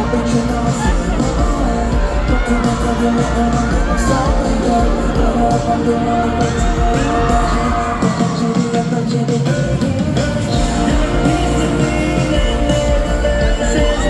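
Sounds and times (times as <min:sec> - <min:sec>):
crowd cheering: 0:00.0 - 0:14.0
person singing: 0:00.0 - 0:14.0
pop song over sound system: 0:00.0 - 0:14.0.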